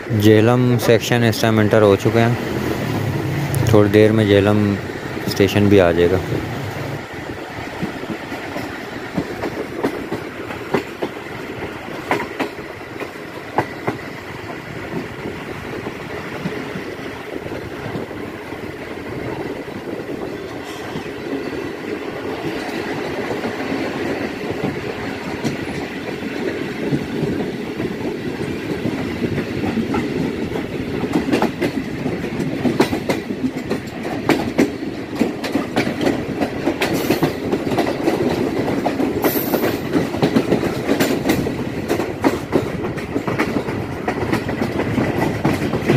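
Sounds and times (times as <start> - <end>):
train rumble: 0.0 - 45.9
train wheels clattering on rails: 0.0 - 45.9.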